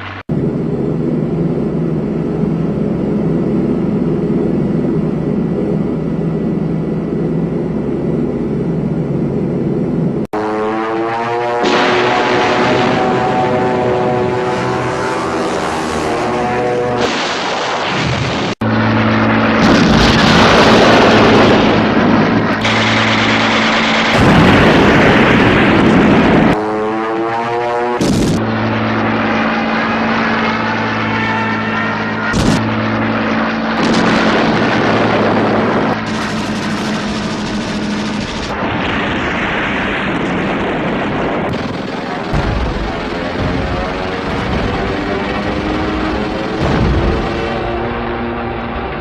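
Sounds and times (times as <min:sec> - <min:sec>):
propeller aircraft engines droning: 0:00.0 - 0:49.0
artillery blasts: 0:11.6 - 0:13.6, 0:16.9 - 0:18.6, 0:19.5 - 0:26.6, 0:28.0 - 0:31.1, 0:31.8 - 0:48.0.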